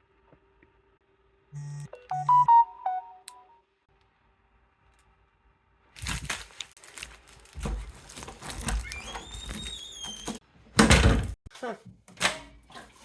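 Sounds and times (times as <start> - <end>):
crinkling and rustling handling noise: 5.9 - 10.3.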